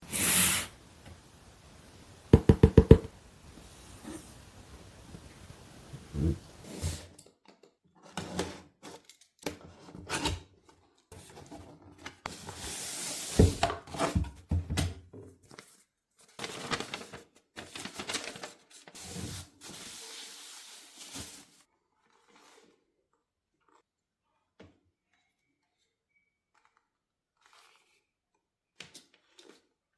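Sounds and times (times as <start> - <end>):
cardboard and plastic crinkling: 15.4 - 19.0.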